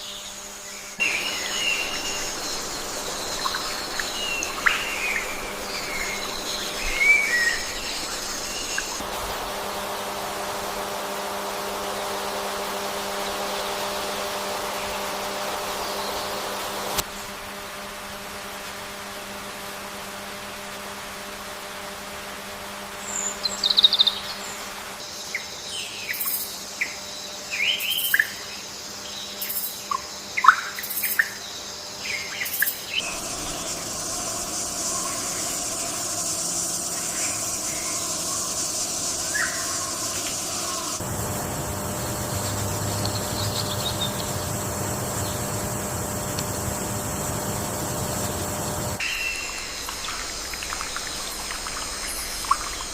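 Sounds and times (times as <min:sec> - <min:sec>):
high-pitched insect chorus: 0:00.0 - 0:17.6, 0:20.8 - 0:52.9
chirping bird calls: 0:01.0 - 0:09.0, 0:32.2 - 0:52.9.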